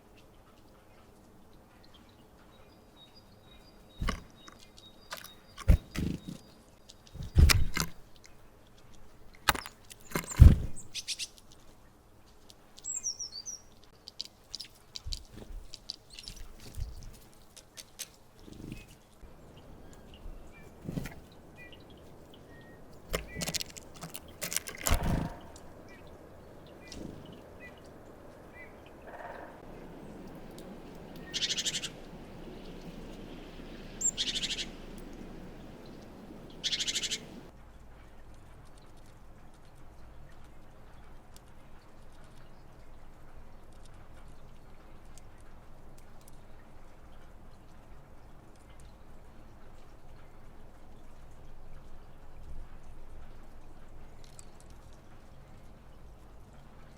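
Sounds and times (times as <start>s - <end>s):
birds pecking and tapping: 4.0s - 37.5s, 54.1s - 56.9s
high bird chirping: 29.8s - 37.5s.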